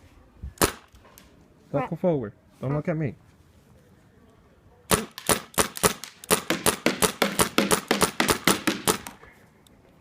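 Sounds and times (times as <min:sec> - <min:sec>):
paintball gun rapid firing: 0:04.9 - 0:09.2.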